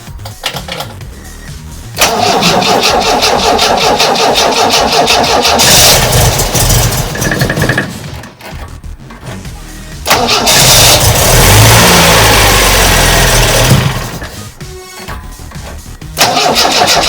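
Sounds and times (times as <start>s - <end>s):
engine cranking on starter motor: 2.0s - 8.7s, 10.0s - 14.6s, 15.8s - 17.0s.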